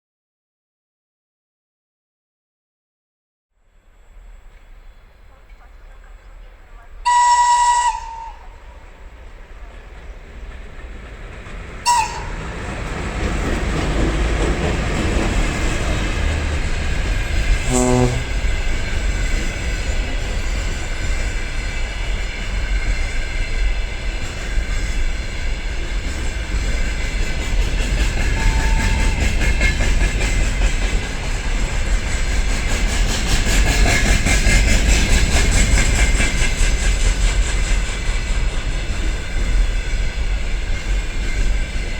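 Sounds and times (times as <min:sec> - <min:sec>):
freight train rumbling past: 0:03.6 - 0:41.9
short sharp sound: 0:17.6 - 0:18.3.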